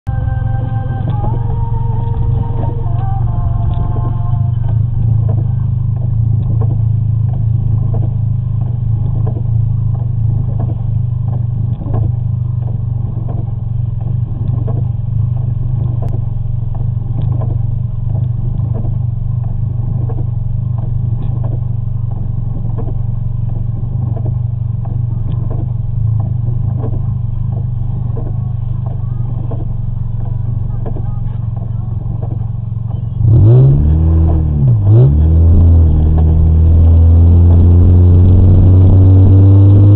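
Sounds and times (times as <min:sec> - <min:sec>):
engine idling roughly: 0:00.0 - 0:39.3
light engine knocks: 0:04.7 - 0:33.2.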